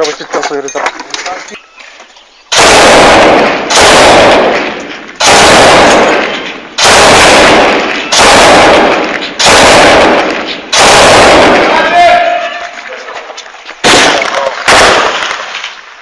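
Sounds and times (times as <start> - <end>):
machine gun firing in bursts: 2.5 - 12.0, 13.8 - 15.5.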